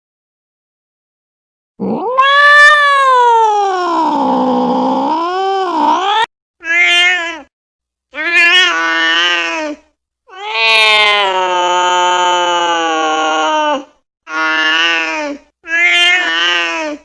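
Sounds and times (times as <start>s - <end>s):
cat yowling: 1.8s - 4.6s, 6.1s - 7.5s, 8.2s - 9.7s, 10.3s - 15.1s, 15.7s - 17.0s.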